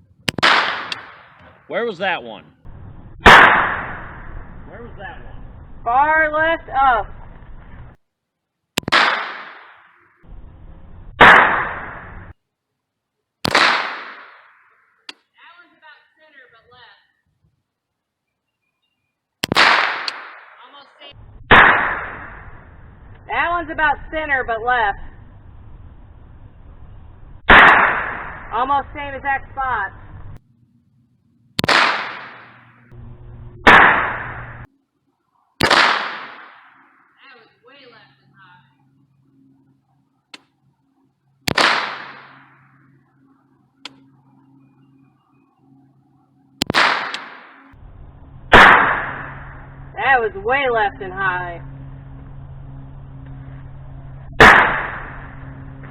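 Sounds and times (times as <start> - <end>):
gunshots with ringing echo: 0.3 - 1.4, 3.2 - 4.5, 8.8 - 10.1, 11.2 - 12.2, 13.4 - 14.7, 19.4 - 20.6, 21.5 - 22.6, 27.5 - 28.6, 31.6 - 32.9, 33.6 - 34.6, 35.6 - 37.1, 41.5 - 42.9, 46.6 - 47.8, 48.5 - 49.8, 54.4 - 55.4.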